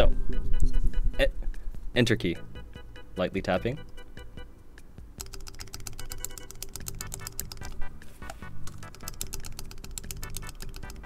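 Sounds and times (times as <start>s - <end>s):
background music: 0.0s - 11.0s
keyboard key tapping: 5.2s - 11.0s.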